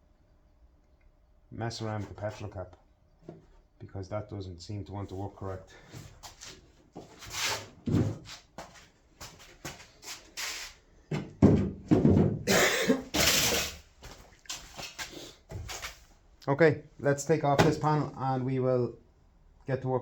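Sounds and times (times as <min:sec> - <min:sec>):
parts knocking and thudding: 0:07.8 - 0:08.3, 0:11.1 - 0:12.6, 0:17.6 - 0:17.9
dull thump: 0:17.6 - 0:17.9.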